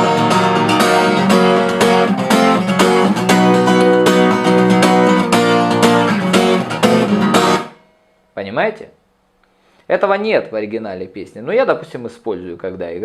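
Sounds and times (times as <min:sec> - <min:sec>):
acoustic guitar strumming: 0:00.0 - 0:08.9.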